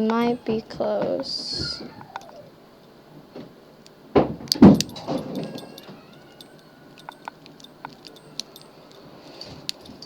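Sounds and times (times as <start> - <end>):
small metallic clicks: 3.8 - 10.0
metal tools clattering: 4.5 - 10.0.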